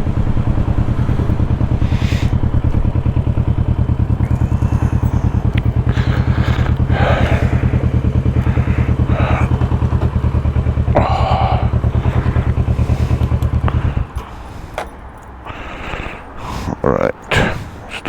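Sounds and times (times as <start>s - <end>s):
motorcycle engine idling: 0.0s - 16.5s
short clatters: 11.2s - 15.8s.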